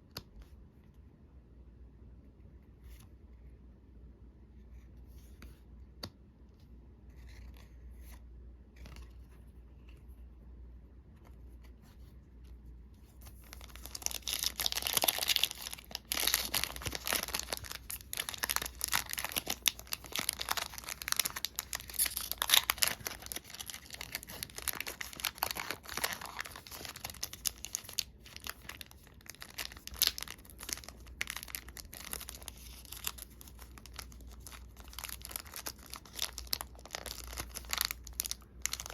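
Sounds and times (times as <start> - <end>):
plastic wrapper tearing and crinkling: 13.4 - 38.9.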